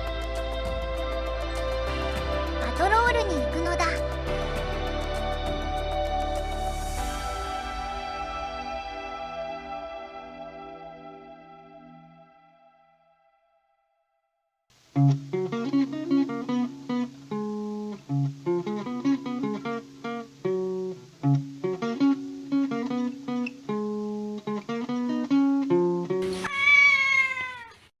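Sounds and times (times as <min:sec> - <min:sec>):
plucked guitar tune: 0:00.0 - 0:09.0, 0:15.0 - 0:26.4
cat meowing: 0:26.3 - 0:27.9.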